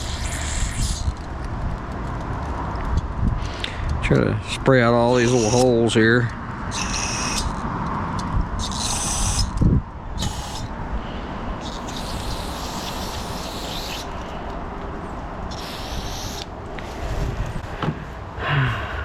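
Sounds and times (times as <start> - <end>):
aerosol spray hissing: 10.2 - 10.7, 11.7 - 14.1, 15.5 - 16.5.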